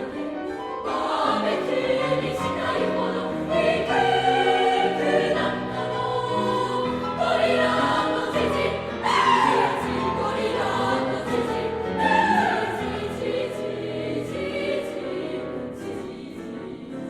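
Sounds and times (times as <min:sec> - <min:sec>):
girls choir singing: 0:00.0 - 0:17.0
piano accompaniment: 0:00.0 - 0:17.0.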